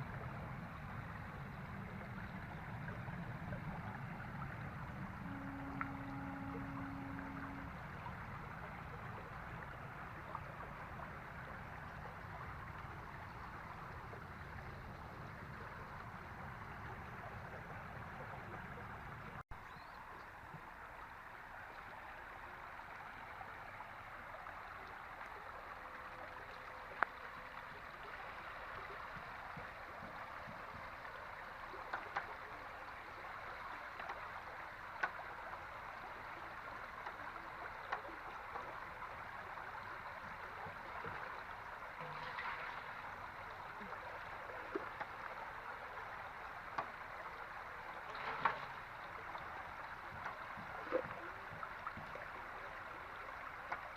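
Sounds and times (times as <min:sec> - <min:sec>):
flood water rushing: 0:00.0 - 0:19.2, 0:20.0 - 0:53.9.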